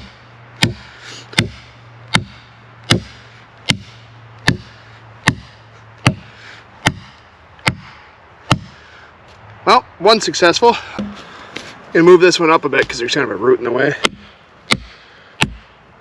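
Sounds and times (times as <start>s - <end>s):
hammer pounding wooden stake: 0.0s - 8.8s, 10.8s - 11.4s, 12.8s - 13.1s, 13.9s - 15.8s.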